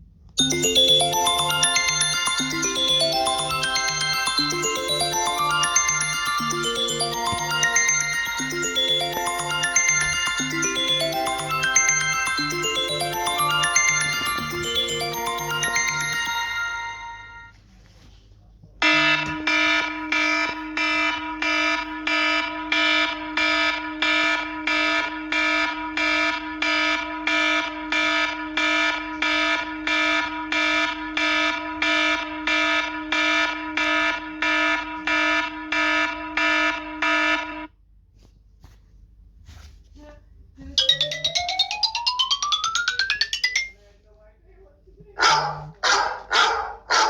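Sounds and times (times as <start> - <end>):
buzzy pulsing phone ringtone: 0.4 - 17.6, 40.8 - 43.7
ringtone with rising sweeping tones: 0.4 - 17.6, 40.8 - 43.8.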